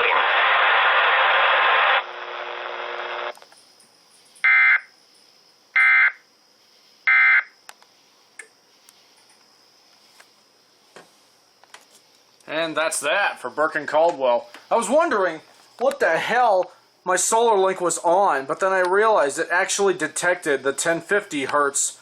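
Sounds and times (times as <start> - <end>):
radio hiss: 0.0 - 3.3.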